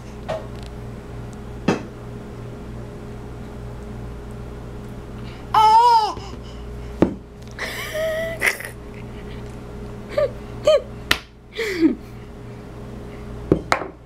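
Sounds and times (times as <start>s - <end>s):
baby squealing and chirping: 5.6s - 6.3s.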